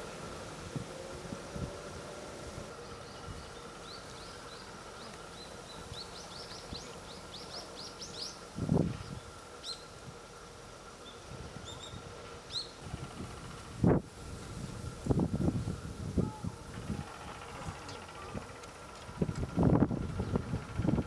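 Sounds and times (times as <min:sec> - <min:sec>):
small birds chirping: 0:02.8 - 0:10.0, 0:11.0 - 0:12.8, 0:16.8 - 0:20.8.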